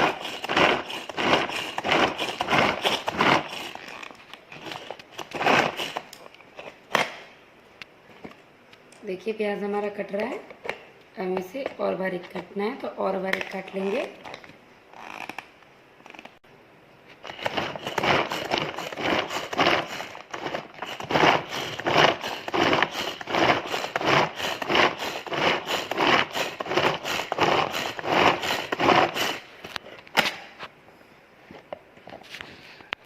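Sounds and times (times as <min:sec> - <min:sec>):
hand-pull chopper whirring and rattling: 0:00.0 - 0:06.2, 0:17.3 - 0:29.4.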